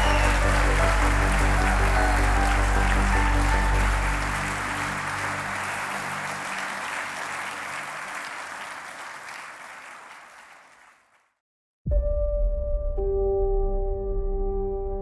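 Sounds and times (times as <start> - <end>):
background music: 0.0 - 8.1
audience applauding: 0.0 - 11.3.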